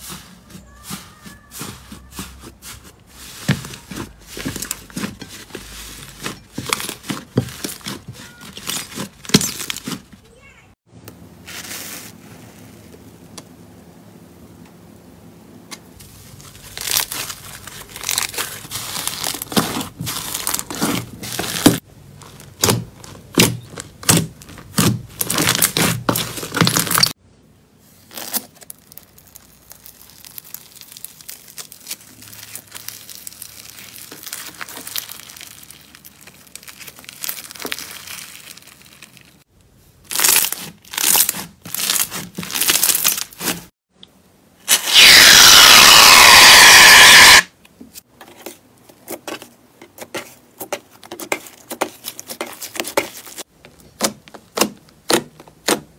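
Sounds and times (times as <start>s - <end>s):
slime squelching and popping: 28.2s - 39.2s, 44.7s - 47.4s.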